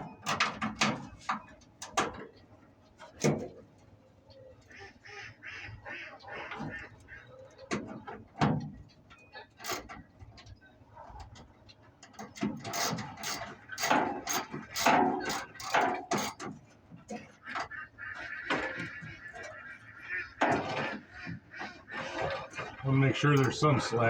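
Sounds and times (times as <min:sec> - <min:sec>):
hand tools clicking on metal: 0:12.1 - 0:16.5.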